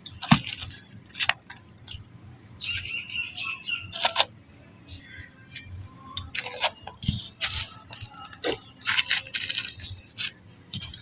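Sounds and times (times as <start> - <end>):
sand balls crunching: 4.9 - 11.0.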